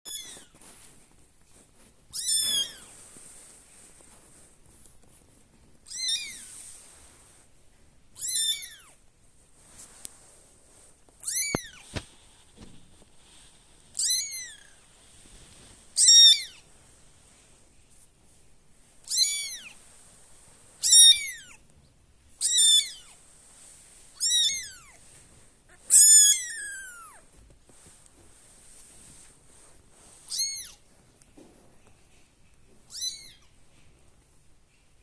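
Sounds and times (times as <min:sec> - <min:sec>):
kitten meowing: 0:00.1 - 0:00.5, 0:02.1 - 0:02.9, 0:05.8 - 0:06.6, 0:08.2 - 0:09.0, 0:11.2 - 0:11.8, 0:14.0 - 0:14.8, 0:16.0 - 0:16.6, 0:19.0 - 0:19.8, 0:20.8 - 0:21.6, 0:22.4 - 0:23.2, 0:24.2 - 0:25.0, 0:25.7 - 0:27.2, 0:30.3 - 0:30.8, 0:32.9 - 0:33.5.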